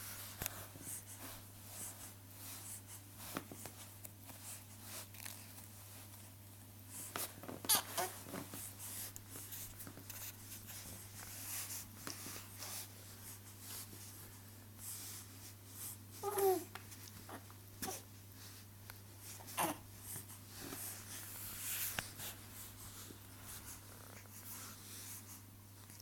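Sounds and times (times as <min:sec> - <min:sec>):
soft rustling: 0:00.0 - 0:26.0
baby vocal sound: 0:16.2 - 0:16.7, 0:19.5 - 0:19.8.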